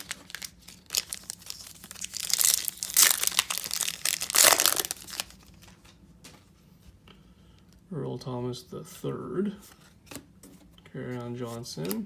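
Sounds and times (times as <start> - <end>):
foil wrapper tearing and crinkling: 0.0 - 5.5.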